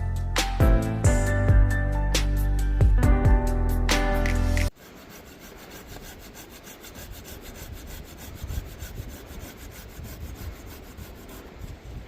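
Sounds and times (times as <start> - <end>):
saw cutting wood: 4.6 - 11.7.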